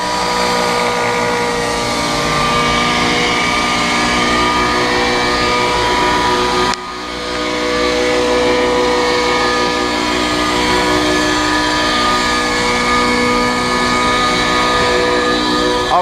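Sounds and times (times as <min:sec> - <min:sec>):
engine revving: 0:00.0 - 0:16.0.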